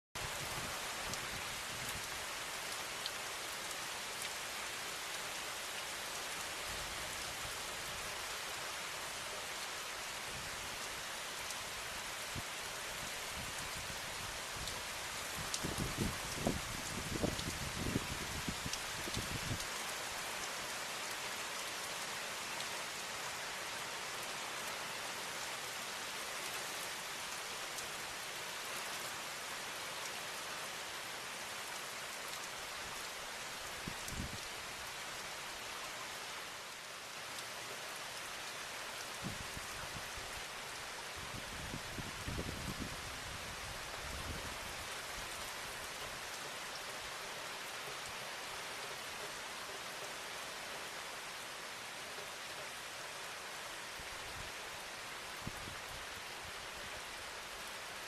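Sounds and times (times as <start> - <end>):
heavy rain hissing: 0.2 - 21.3, 32.6 - 45.9.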